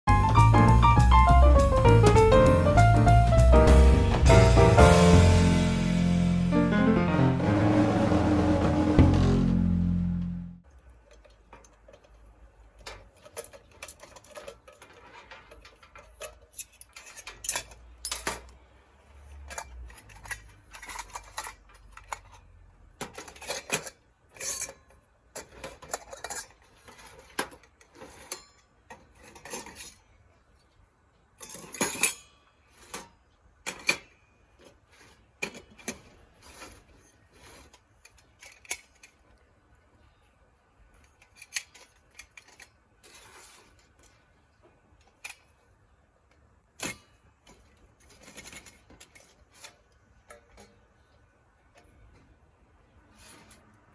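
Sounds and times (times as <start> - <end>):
metal parts clinking and clattering: 12.8 - 18.6, 19.2 - 30.1, 31.4 - 32.3, 35.4 - 39.3, 41.0 - 44.2.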